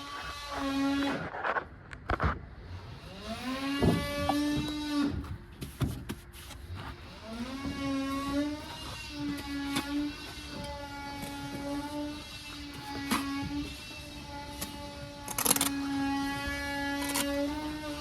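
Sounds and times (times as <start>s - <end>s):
power tool motor whining: 2.6s - 5.4s, 6.8s - 18.0s.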